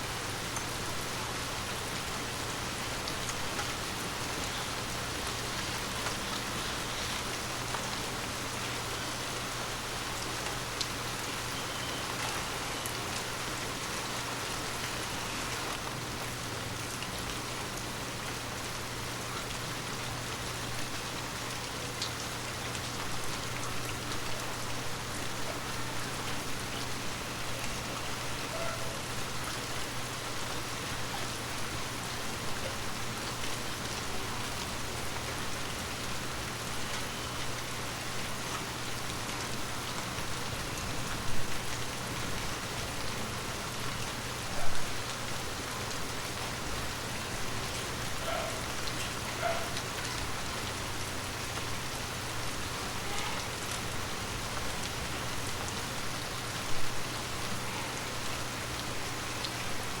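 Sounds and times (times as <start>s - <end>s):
rain on leaves: 0.0s - 60.0s.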